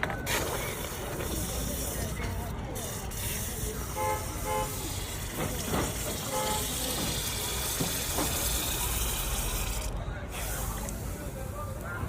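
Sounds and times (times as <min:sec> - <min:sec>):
horn toots: 0:03.9 - 0:04.9, 0:06.2 - 0:06.8.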